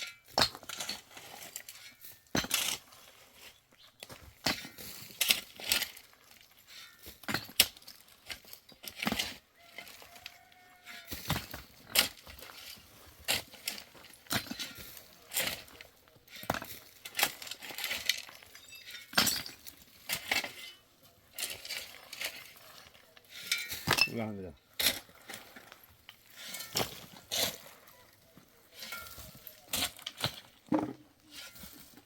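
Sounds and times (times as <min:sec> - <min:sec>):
hard objects clinking and knocking: 0:13.3 - 0:20.8, 0:23.4 - 0:24.2, 0:28.8 - 0:31.6.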